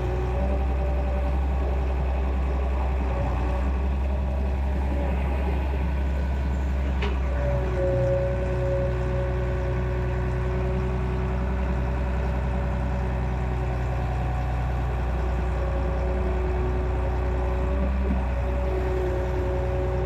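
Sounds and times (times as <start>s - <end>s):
diesel engine humming: 0.0s - 20.0s.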